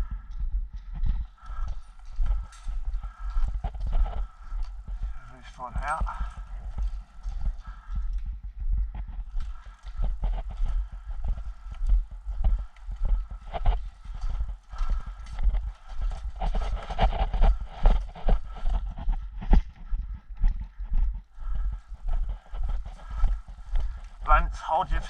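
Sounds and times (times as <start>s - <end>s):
footsteps on hard ground: 0.0s - 25.0s.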